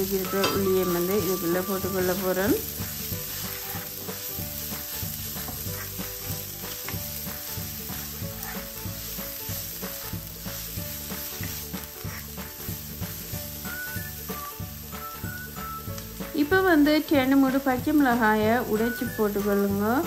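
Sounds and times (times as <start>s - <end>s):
onion frying in oil: 0.0s - 20.0s
spoon stirring in pan: 0.1s - 13.8s.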